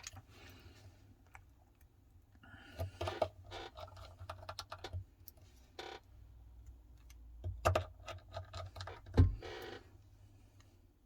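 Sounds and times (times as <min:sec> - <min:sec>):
clicks and scrapes of phone parts: 0:02.8 - 0:06.1, 0:07.0 - 0:09.8.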